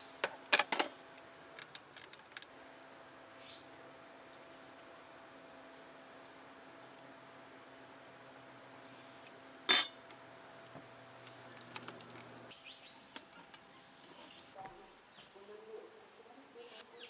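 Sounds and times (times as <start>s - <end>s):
dishes and utensils clinking: 9.7s - 10.0s.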